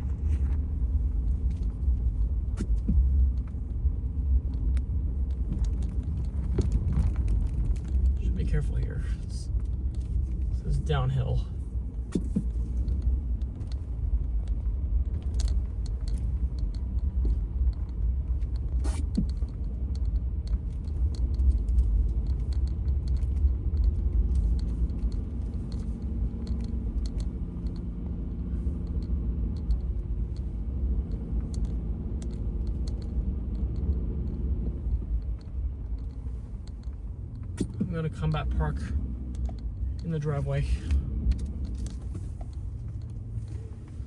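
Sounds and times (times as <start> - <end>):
car interior rumble on snow: 0.0 - 44.0
faint engine hum: 0.0 - 44.0
small clicks and knocks: 1.2 - 8.2, 12.1 - 38.7, 39.3 - 44.0.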